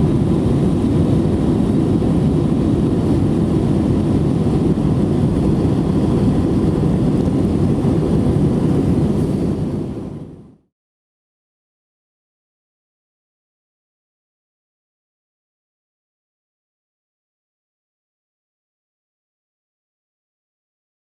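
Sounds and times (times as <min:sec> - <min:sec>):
aircraft cabin engine rumble: 0:00.0 - 0:10.7.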